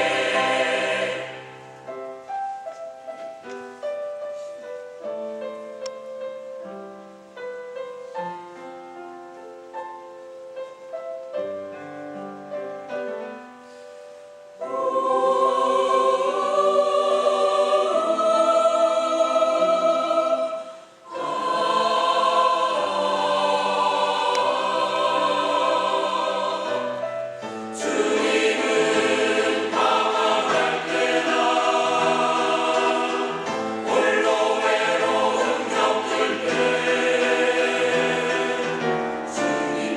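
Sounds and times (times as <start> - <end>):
choir singing: 0.0 - 2.1, 14.6 - 39.9
piano playing: 0.0 - 39.9.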